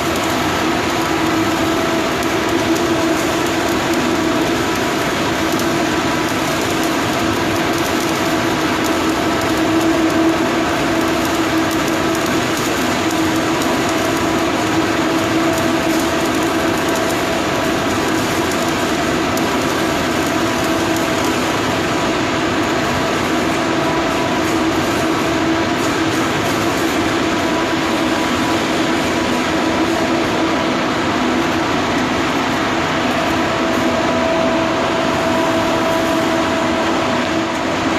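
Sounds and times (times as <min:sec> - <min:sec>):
machine hum: 0:00.0 - 0:37.9.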